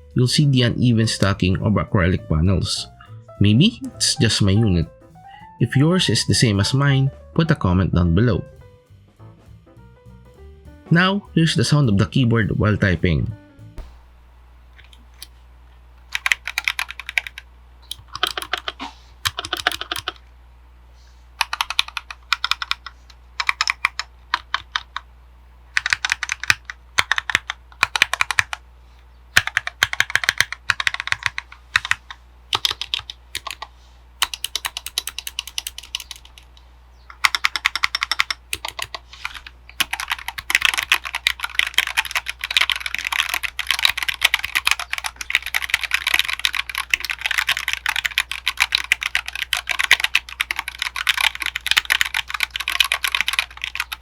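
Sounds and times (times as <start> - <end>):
low steady hum: 0.0 - 54.0
mechanical keyboard typing: 16.1 - 20.2, 21.4 - 25.1, 25.8 - 28.6, 29.4 - 36.5, 37.1 - 54.0.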